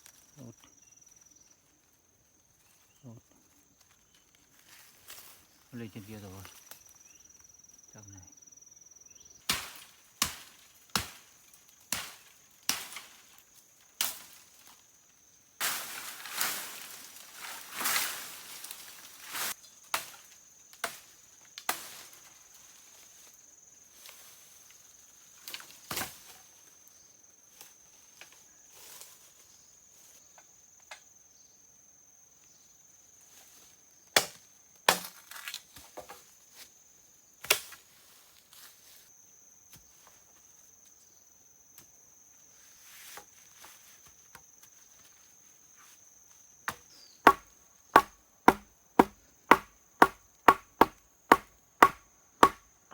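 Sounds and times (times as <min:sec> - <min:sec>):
high insect drone: 0:00.0 - 0:52.9
chopping wood: 0:09.5 - 0:11.2, 0:34.2 - 0:35.2, 0:46.7 - 0:52.7.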